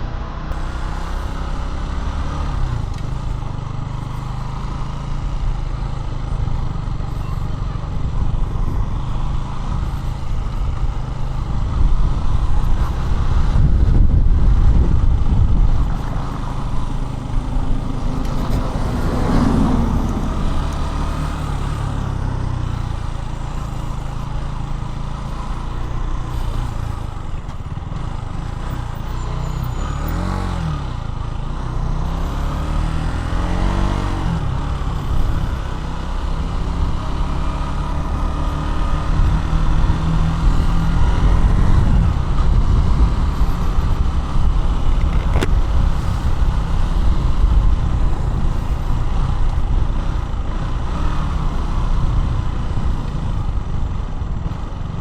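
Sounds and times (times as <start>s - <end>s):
motorcycle engine running: 0.0s - 55.0s
wind rumble on microphone: 6.5s - 23.3s, 38.7s - 55.0s.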